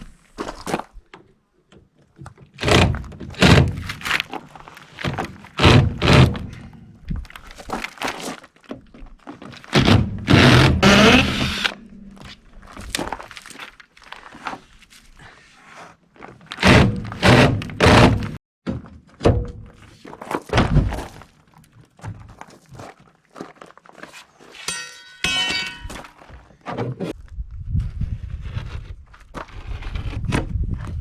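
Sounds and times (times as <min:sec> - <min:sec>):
heavy thuds and knocks: 0:20.5 - 0:21.1.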